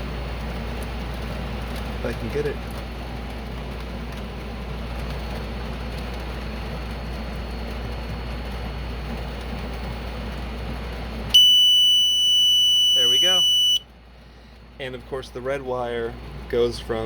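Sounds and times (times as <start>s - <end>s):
steady low hum: 0.0s - 17.0s
faint high whine: 11.4s - 13.8s.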